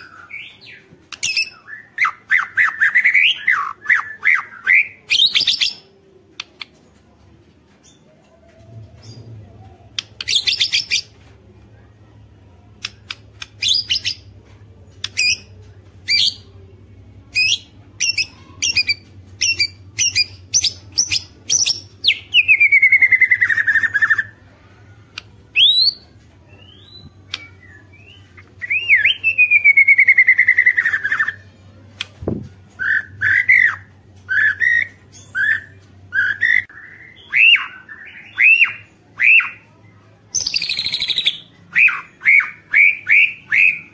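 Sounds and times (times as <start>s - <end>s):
bird singing: 25.5s - 31.6s.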